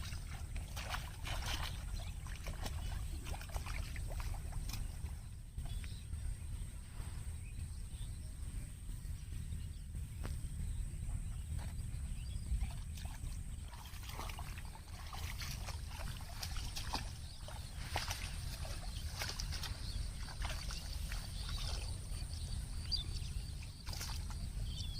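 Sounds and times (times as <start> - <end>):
water splashing: 0.0 - 5.2, 12.6 - 24.9
wind rumbling on microphone: 0.0 - 24.9.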